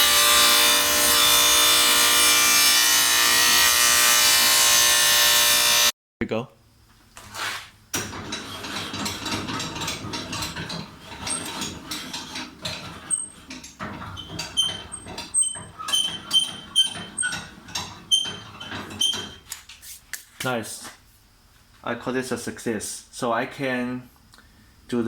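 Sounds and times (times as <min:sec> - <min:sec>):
short high squeaks: 0:14.1 - 0:17.5.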